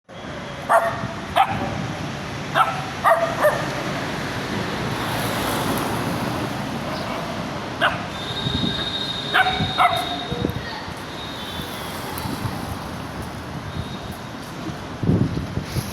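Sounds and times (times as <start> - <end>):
small dog barking: 0.7 - 1.6, 2.6 - 3.8, 7.8 - 8.1, 9.3 - 10.2.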